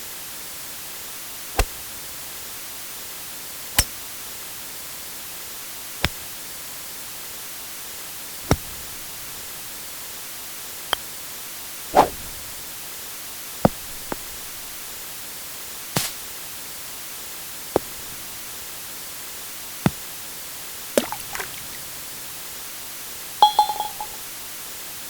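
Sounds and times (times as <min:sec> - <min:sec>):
golf club hitting ball: 0:01.6 - 0:01.9, 0:08.5 - 0:09.5, 0:11.9 - 0:12.7, 0:13.6 - 0:14.9, 0:17.8 - 0:18.4, 0:23.4 - 0:24.2
golf ball bouncing: 0:08.5 - 0:09.5, 0:11.9 - 0:12.7, 0:13.6 - 0:14.9, 0:17.8 - 0:18.4, 0:21.0 - 0:22.1, 0:23.4 - 0:24.2
rattle with ringing ping: 0:23.4 - 0:24.2.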